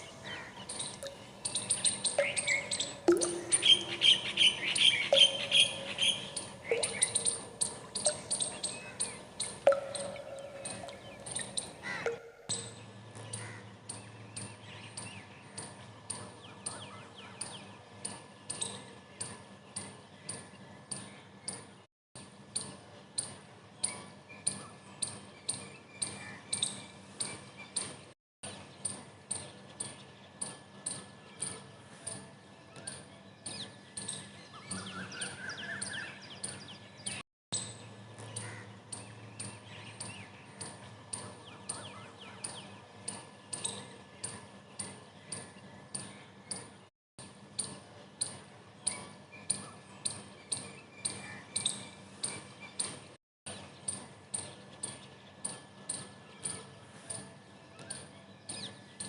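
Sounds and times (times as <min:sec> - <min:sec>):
small birds chirping: 0:00.0 - 0:12.6
sharp repeating tick: 0:00.7 - 0:12.4.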